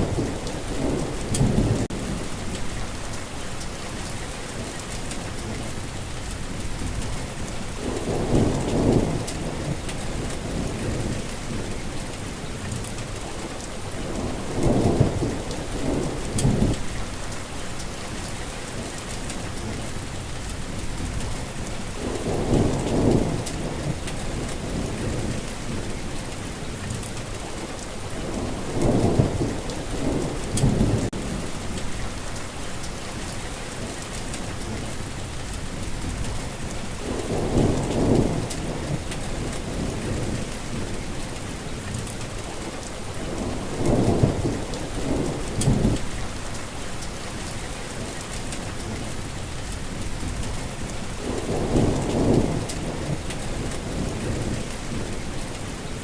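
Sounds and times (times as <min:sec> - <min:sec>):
low rumbles of thunder: 0:00.0 - 0:03.1, 0:04.0 - 0:56.0
heavy rain falling: 0:00.0 - 0:56.0.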